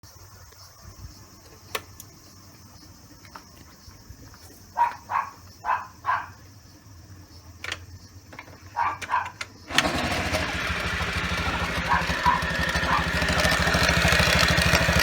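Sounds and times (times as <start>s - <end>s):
insects chirring: 0.0s - 10.0s
dog barking: 4.7s - 6.4s, 8.7s - 9.4s, 11.8s - 13.2s.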